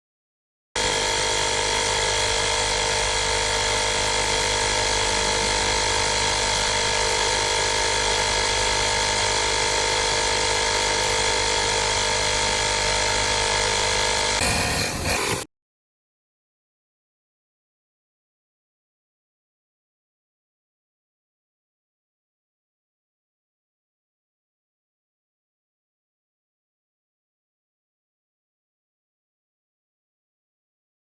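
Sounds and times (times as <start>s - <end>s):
tire inflator compressor drone: 0.8s - 15.5s.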